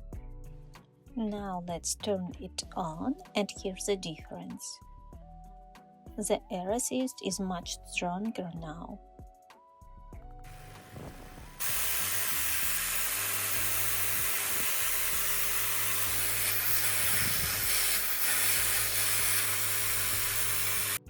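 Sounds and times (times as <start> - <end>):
air compressor hissing: 10.5 - 21.0.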